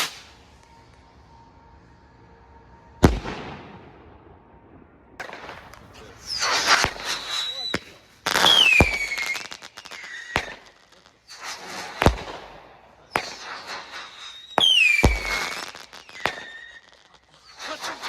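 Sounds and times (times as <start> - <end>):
firework bangs: 0.0 - 1.4, 3.0 - 18.0
firework whistles falling in pitch: 0.0 - 1.7, 5.3 - 12.4, 13.1 - 18.0.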